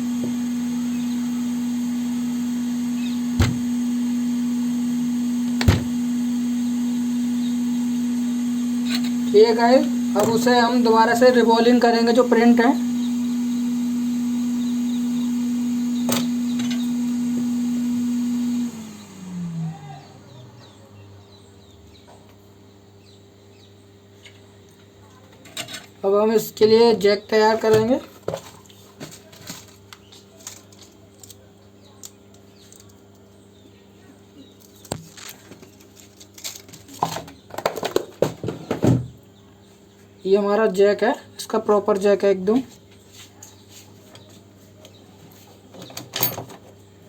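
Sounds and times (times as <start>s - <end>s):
hot air gun fan hum: 0.0s - 23.7s
small parts and tools clicking: 29.5s - 31.4s, 32.0s - 33.3s.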